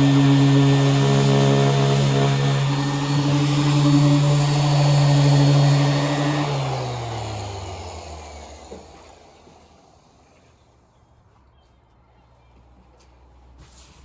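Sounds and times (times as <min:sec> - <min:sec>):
power sander spinning down: 0:00.0 - 0:10.3.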